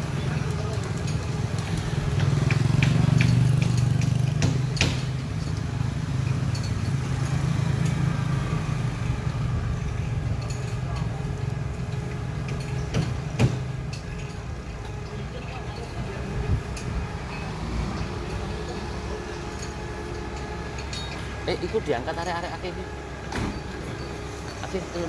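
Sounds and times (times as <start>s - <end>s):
vehicle engine humming: 0.0s - 25.0s
sharp knocks and clanks: 0.4s - 8.0s, 10.0s - 15.0s, 23.3s - 24.7s.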